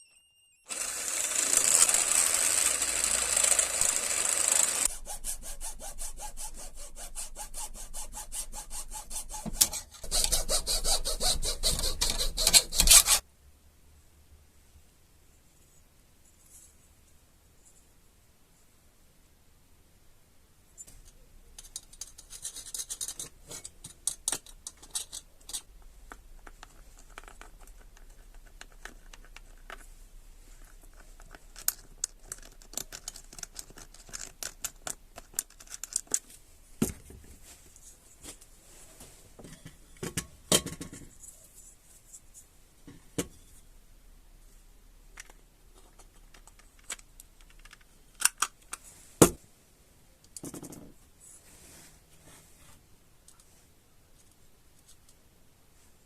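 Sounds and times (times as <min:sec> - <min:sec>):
small parts clicking and scraping: 0:00.7 - 0:05.1, 0:11.7 - 0:13.2, 0:20.8 - 0:36.4, 0:45.2 - 0:48.9, 0:54.2 - 0:55.2.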